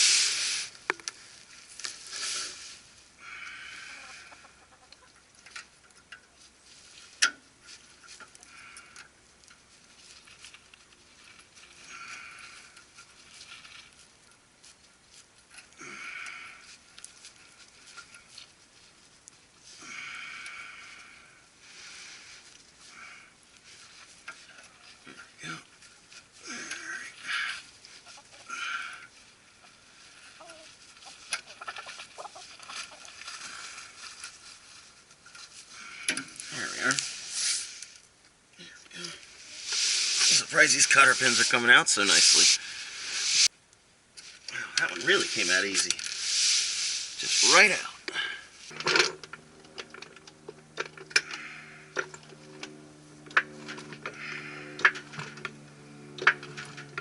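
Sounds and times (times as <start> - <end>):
steady low hum: 33.2 - 57.0.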